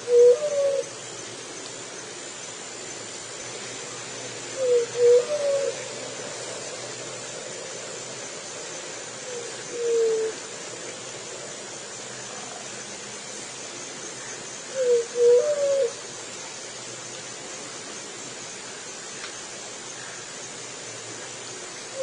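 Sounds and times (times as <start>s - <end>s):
dove cooing: 0.0s - 0.9s, 4.5s - 6.0s, 9.2s - 10.5s, 14.7s - 16.0s
steady background hiss: 0.0s - 22.0s.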